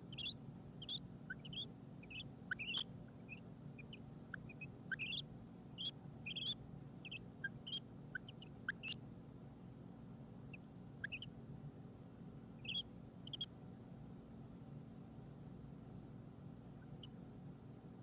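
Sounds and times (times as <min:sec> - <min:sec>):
bird chicks chirping: 0:00.1 - 0:09.0, 0:11.0 - 0:11.3, 0:12.6 - 0:13.5.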